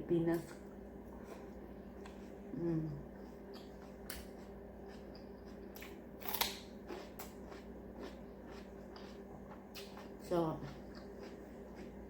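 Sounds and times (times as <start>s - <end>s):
person eating crisp bites: 3.1s - 12.0s.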